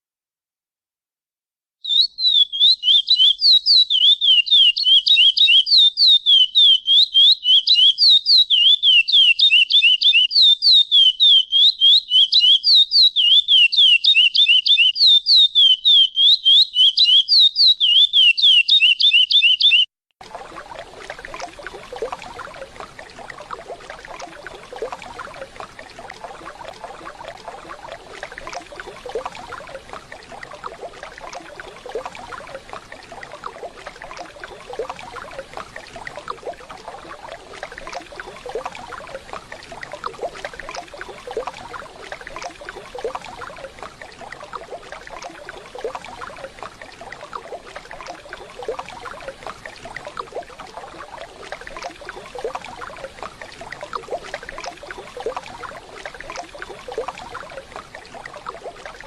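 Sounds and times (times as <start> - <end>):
bird chirping calls: 1.8 - 19.9.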